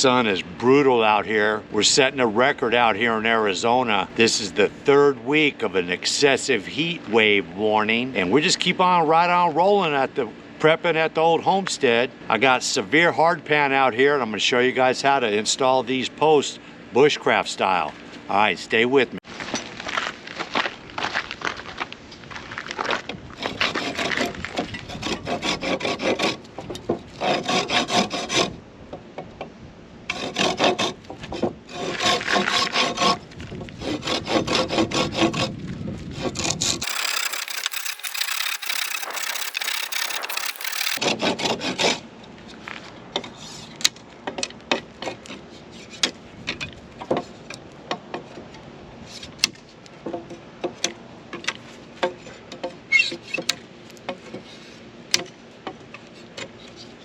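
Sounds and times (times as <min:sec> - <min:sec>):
hand tool rasping: 0:36.8 - 0:41.0.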